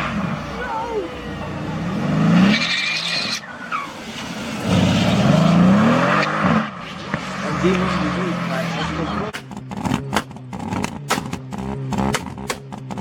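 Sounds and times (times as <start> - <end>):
car engine revving hard: 4.5 - 13.0.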